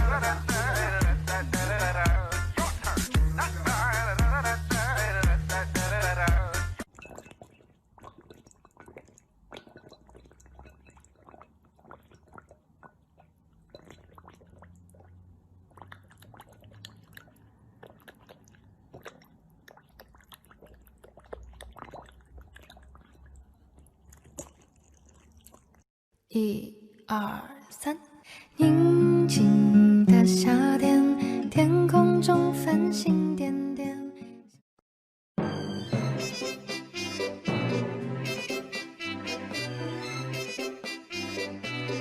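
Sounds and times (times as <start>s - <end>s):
music: 0.0s - 6.8s, 28.6s - 34.6s, 35.4s - 42.0s
chewing crunches: 15.7s - 25.9s.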